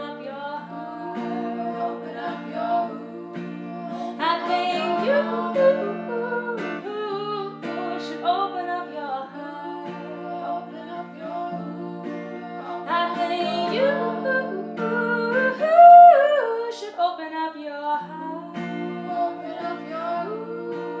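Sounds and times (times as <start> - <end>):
acoustic guitar chords: 0.0 - 21.0.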